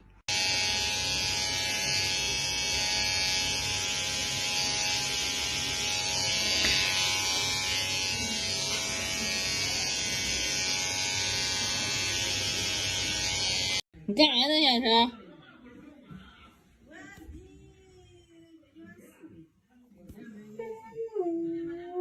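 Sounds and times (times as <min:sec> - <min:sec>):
small electric motor buzzing: 0:00.3 - 0:13.8.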